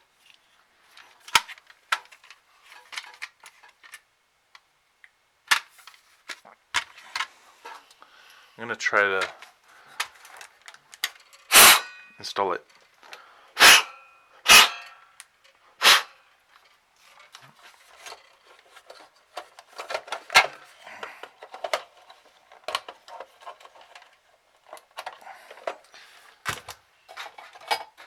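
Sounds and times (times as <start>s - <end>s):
plastic and metal parts clicking: 1.0s - 4.7s, 5.5s - 7.3s, 9.2s - 11.5s, 16.6s - 28.0s.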